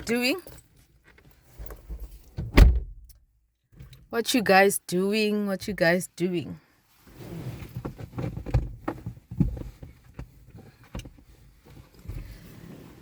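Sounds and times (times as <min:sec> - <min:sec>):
knocks and thumps from road bumps: 0:07.7 - 0:12.4.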